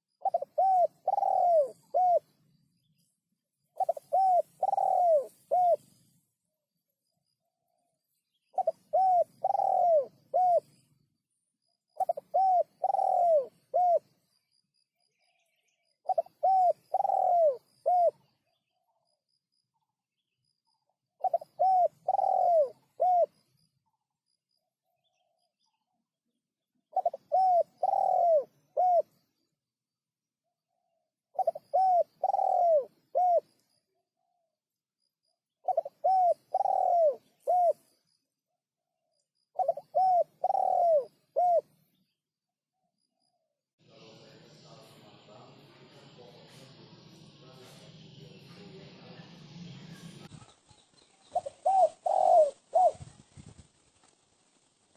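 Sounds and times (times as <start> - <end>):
dove cooing: 0.2 - 2.4, 3.8 - 6.0, 8.5 - 10.8, 12.0 - 14.2, 16.0 - 18.3, 21.2 - 23.5, 26.9 - 29.2, 31.3 - 33.6, 35.6 - 38.0, 39.6 - 41.8, 49.8 - 53.6
faint high chirps: 43.0 - 53.5.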